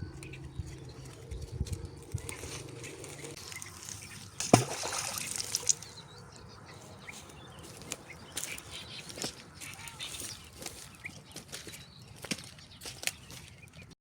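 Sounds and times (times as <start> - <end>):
water trickling and sloshing: 3.4 - 6.5
water splashing: 4.3 - 6.0.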